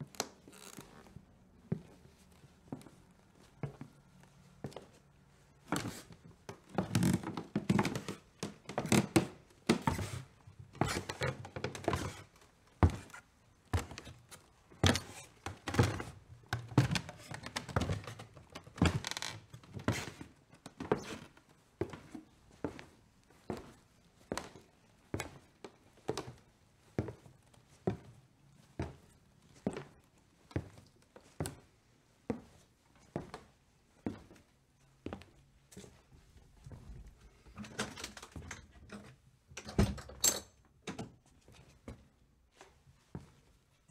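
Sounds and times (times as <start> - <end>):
footsteps on wooden floorboards: 5.7 - 13.1, 13.7 - 26.4, 32.3 - 34.4.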